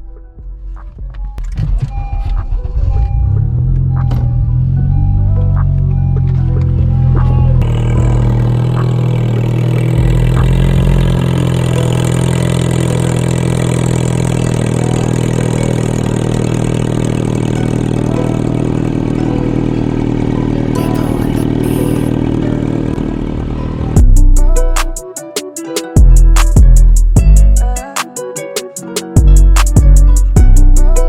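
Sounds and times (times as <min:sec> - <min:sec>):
car engine idling: 0:00.9 - 0:25.0, 0:29.2 - 0:31.0.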